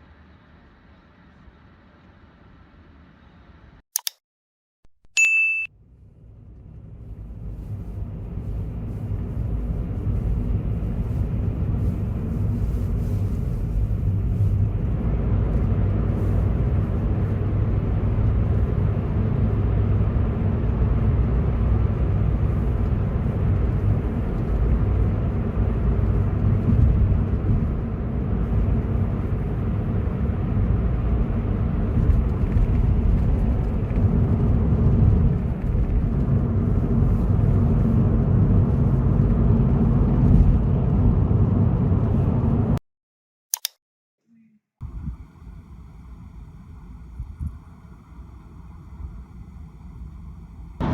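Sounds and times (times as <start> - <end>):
road noise: 0.0 - 3.8, 5.8 - 42.8, 44.8 - 50.9
vehicle engine drone: 5.8 - 42.8, 44.8 - 50.9.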